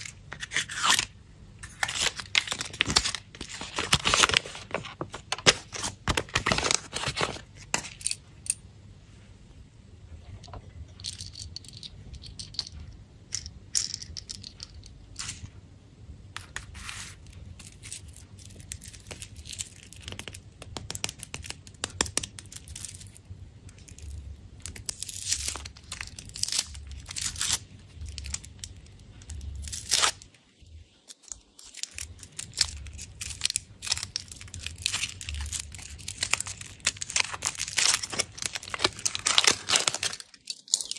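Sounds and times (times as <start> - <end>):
foil wrappers crinkling: 0.0 - 7.5, 23.8 - 30.3, 31.0 - 40.9.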